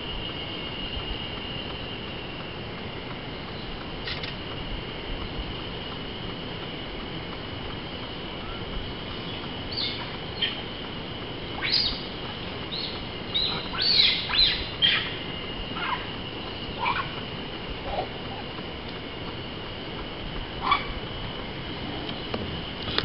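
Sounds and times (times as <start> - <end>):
thin high whine: 0.0 - 23.0
high-pitched animal calls: 11.6 - 12.1, 12.8 - 17.2, 20.6 - 21.0.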